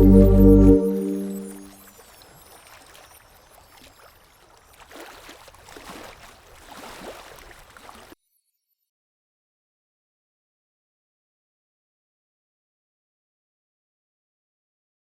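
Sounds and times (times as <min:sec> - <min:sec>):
lake water lapping and gurgling: 0:01.3 - 0:08.2
small water splashes: 0:01.6 - 0:08.2.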